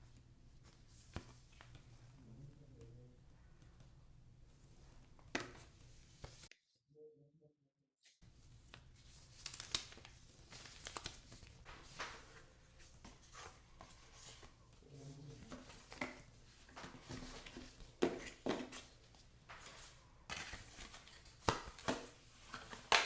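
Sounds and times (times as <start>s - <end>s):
cardboard and plastic rustling: 15.2s - 23.0s.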